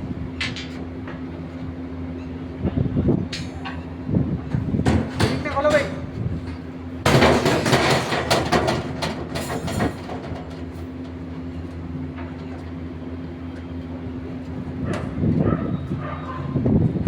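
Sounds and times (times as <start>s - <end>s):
clattering and scraping: 6.5s - 11.2s.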